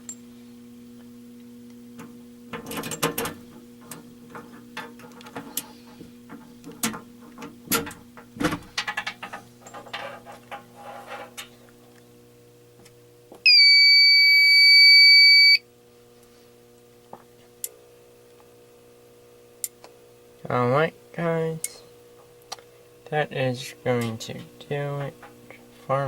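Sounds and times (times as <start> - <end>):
faint electrical hum: 0.0 - 26.0
fire alarm sounder tone: 13.4 - 15.6.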